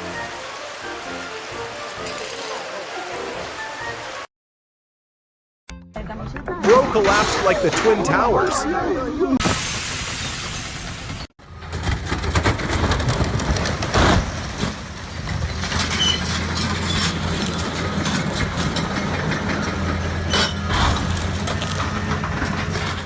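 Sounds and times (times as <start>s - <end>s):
heavy engine running: 9.5s - 23.0s
crunching and knocking impacts: 11.5s - 20.0s, 20.6s - 23.0s.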